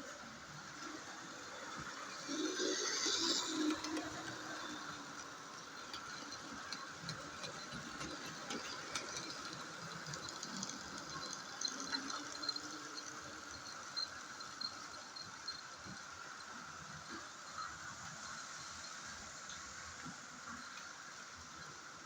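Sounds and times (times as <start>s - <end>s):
wheels clicking on track: 0.1s - 22.0s
small motor whir: 0.8s - 15.2s.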